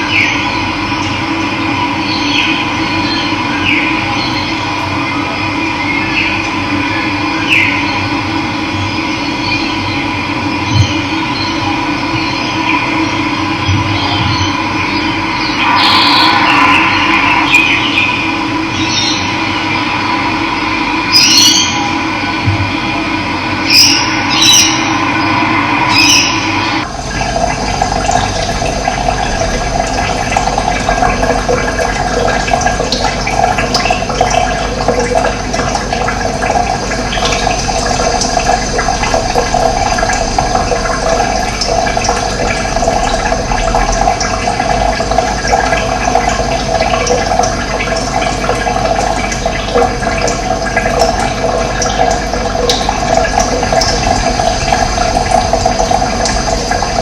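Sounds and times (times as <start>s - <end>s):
running water rushing: 12.2s - 57.0s
steady tones: 14.6s - 46.5s.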